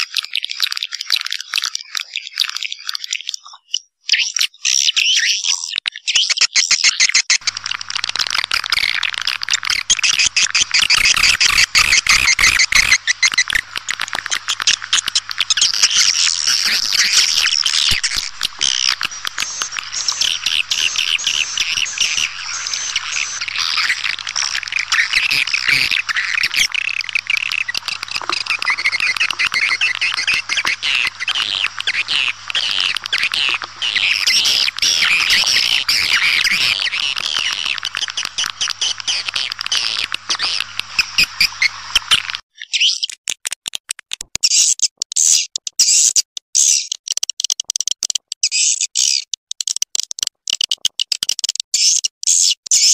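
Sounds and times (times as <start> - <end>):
swiftlets twittering chorus: 6.5 - 43.1.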